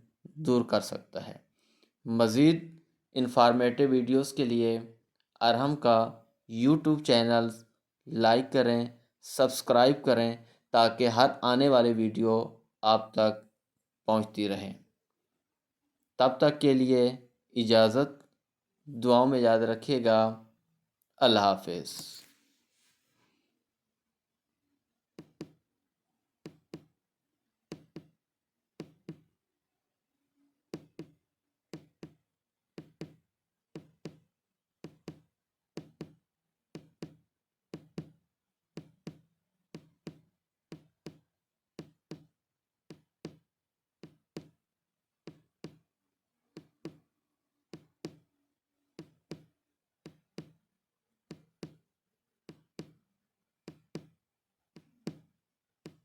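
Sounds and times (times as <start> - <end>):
dull knocks with clicks: 27.7 - 28.1, 28.8 - 29.2, 32.8 - 33.2, 33.8 - 34.2.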